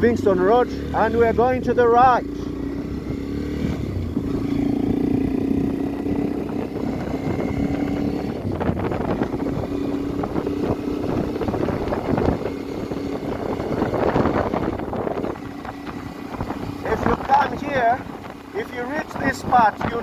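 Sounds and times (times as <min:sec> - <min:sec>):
motorcycle engine running: 0:00.0 - 0:20.0
wind rushing over microphone: 0:00.6 - 0:20.0.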